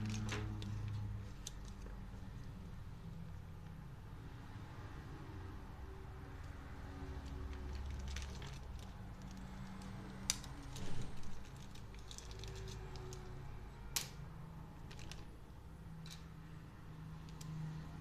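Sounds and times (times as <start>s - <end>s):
small hard objects clicking: 7.2s - 13.4s.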